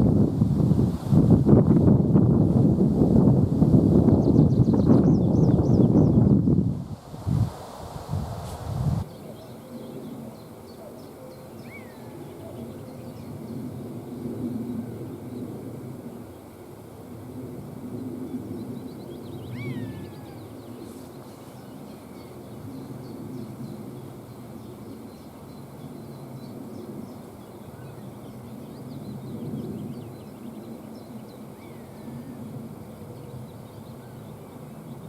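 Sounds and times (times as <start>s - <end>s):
small birds chirping: 9.0s - 13.7s, 18.5s - 35.0s.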